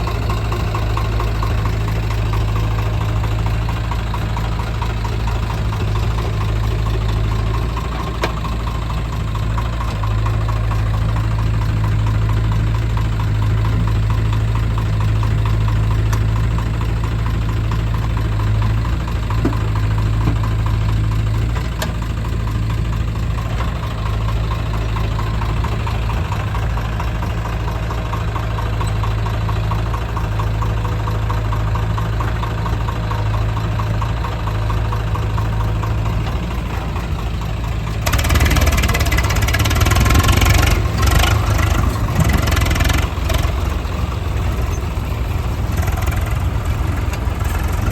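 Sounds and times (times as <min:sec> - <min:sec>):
diesel engines humming: 0:00.0 - 0:47.9.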